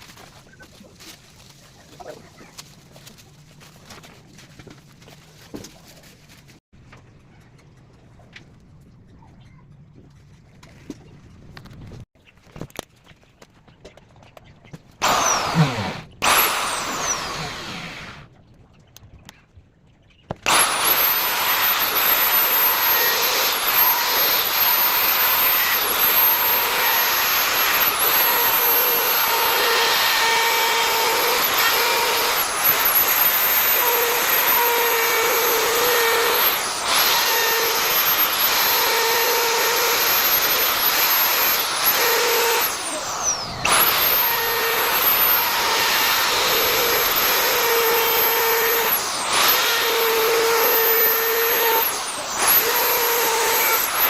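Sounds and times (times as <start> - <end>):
electric router cutting wood: 15.0 - 18.3, 20.5 - 54.0.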